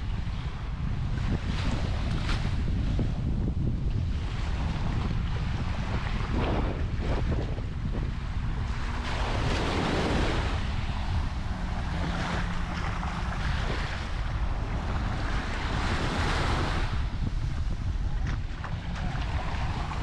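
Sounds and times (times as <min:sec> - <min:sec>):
wind buffeting microphone: 0:00.0 - 0:20.0
surf washing onto beach: 0:04.2 - 0:20.0.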